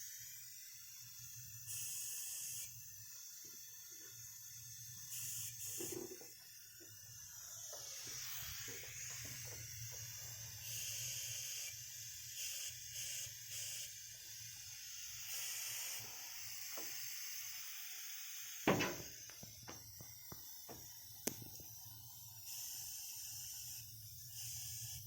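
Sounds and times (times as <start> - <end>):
air hissing into engine intake: 5.2 - 11.0, 15.2 - 22.6
sharp knock: 18.7 - 19.1.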